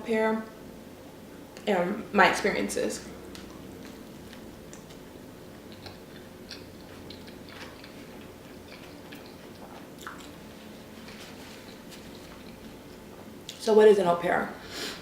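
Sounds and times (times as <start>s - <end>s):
person chewing food: 3.2s - 13.4s.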